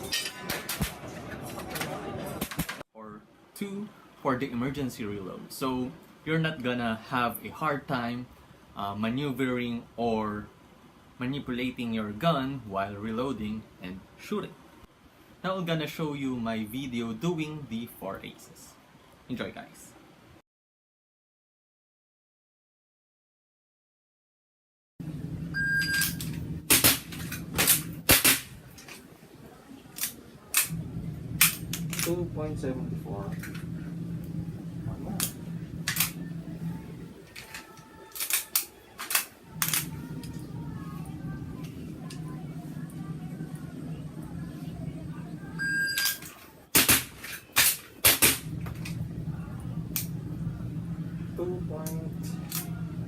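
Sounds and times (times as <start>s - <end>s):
airsoft pistol shots: 26.7s - 28.5s, 46.8s - 48.5s.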